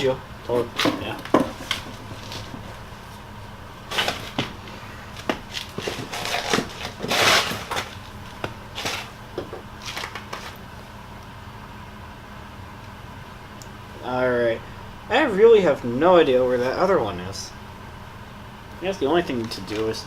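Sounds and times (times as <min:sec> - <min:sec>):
steady low hum: 0:00.0 - 0:20.0
scraping rustle: 0:03.9 - 0:08.1.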